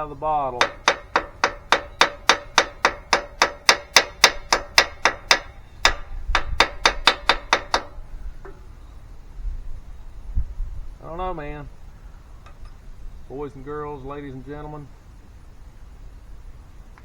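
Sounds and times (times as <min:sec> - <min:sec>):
hammer tapping on metal punch: 0:00.5 - 0:08.6.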